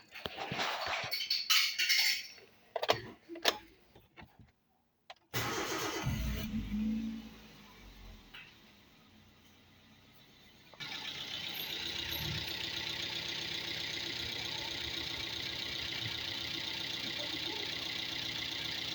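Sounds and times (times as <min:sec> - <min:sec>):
car engine idling: 0:05.4 - 0:18.9.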